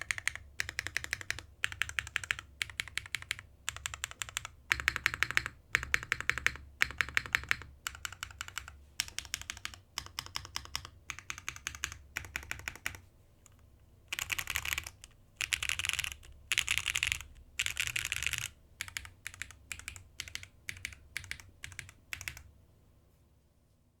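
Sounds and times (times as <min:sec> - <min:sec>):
mechanical keyboard typing: 0:00.0 - 0:13.0, 0:14.1 - 0:22.5.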